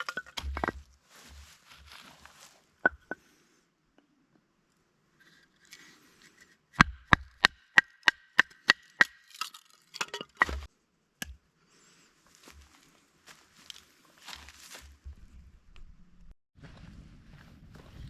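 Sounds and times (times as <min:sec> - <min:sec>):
wood chopping strikes: 0:00.0 - 0:01.0, 0:06.8 - 0:11.4.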